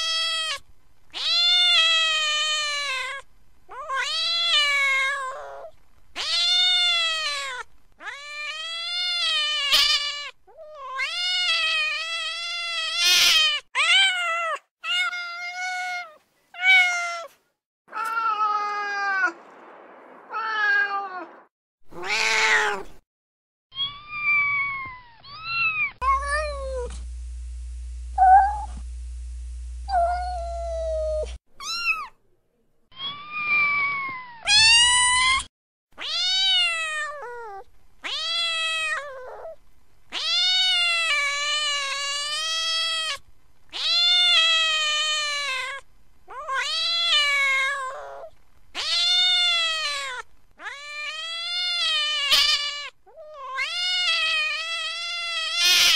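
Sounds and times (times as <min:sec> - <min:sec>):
cat meowing: 0:00.0 - 0:19.3, 0:21.9 - 0:23.0, 0:23.8 - 0:26.9, 0:29.9 - 0:32.1, 0:32.9 - 0:55.9
low hum: 0:26.0 - 0:31.4.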